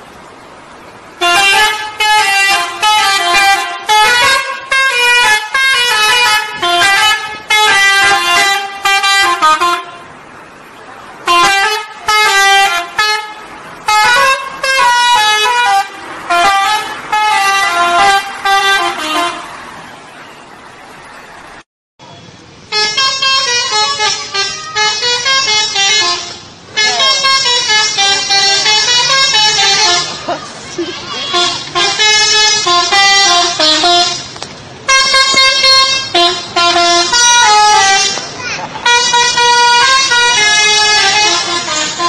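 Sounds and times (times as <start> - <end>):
steady background noise: 0.0 - 42.0
musical multi-tone bus horn: 0.8 - 21.6, 22.6 - 42.0.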